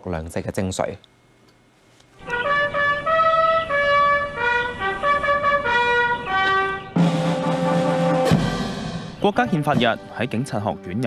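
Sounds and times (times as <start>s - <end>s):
brass band playing: 2.2s - 11.0s
trumpets: 2.2s - 11.0s.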